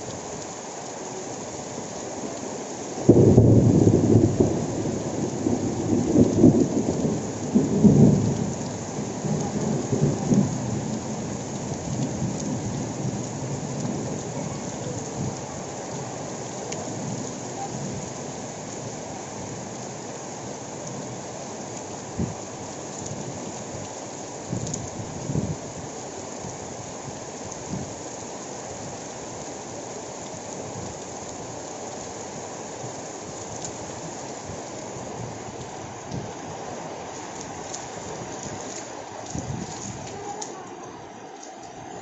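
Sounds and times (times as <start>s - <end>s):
heavy rain falling: 0.0s - 42.0s
thunder rumbling: 3.0s - 16.1s, 36.1s - 40.4s.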